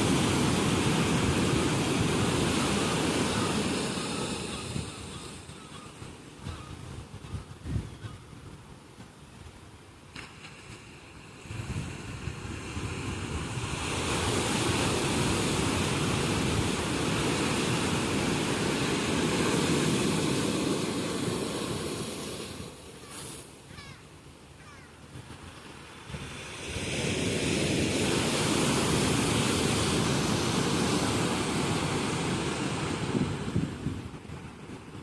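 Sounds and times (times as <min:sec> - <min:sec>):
ocean surf breaking: 0:00.0 - 0:06.5, 0:10.1 - 0:24.1, 0:25.1 - 0:35.0.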